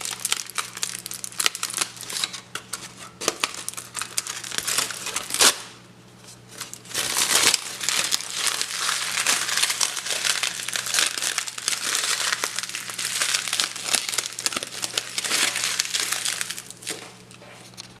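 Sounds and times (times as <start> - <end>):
material crumpled like crackling fire: 0.0 - 2.3, 6.6 - 18.0.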